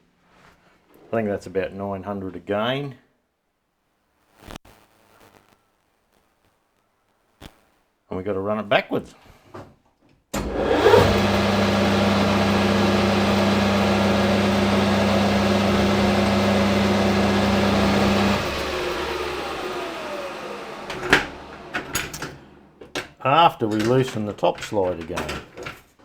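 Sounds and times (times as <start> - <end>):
lathe motor running and spinning down: 10.4 - 22.9
clunk: 20.8 - 25.9.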